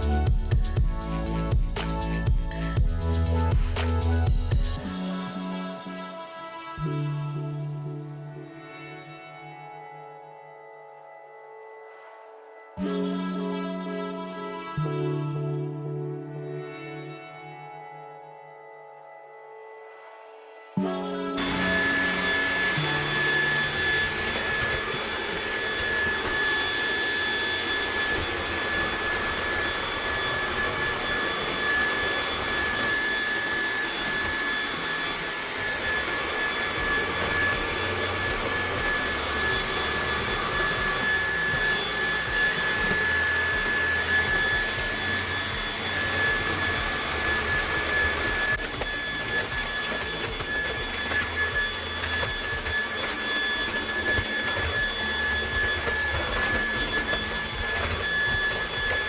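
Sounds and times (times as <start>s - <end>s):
high-pitched whine: 18.8s - 59.0s
robot vacuum suction whir: 19.8s - 59.0s.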